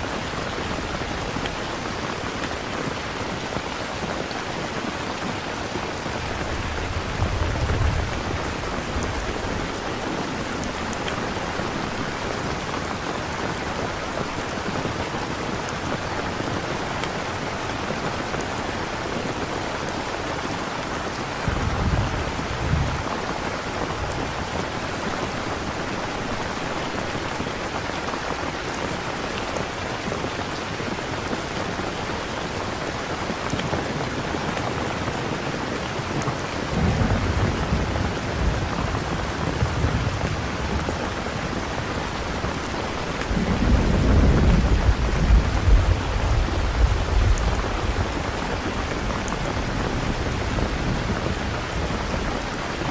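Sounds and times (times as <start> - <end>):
steady rain: 0.0 - 52.9
thunder rumble: 21.4 - 24.3, 43.2 - 48.6.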